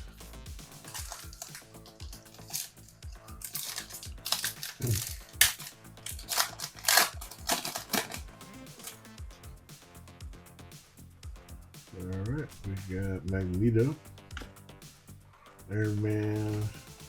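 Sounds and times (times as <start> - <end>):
light background music: 0.0 - 17.0
foil pack crinkling and tearing: 0.8 - 9.1.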